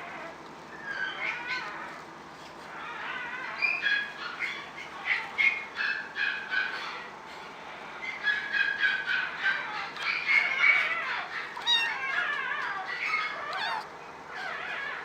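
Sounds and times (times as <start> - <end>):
kittens mewing: 8.0 - 15.0.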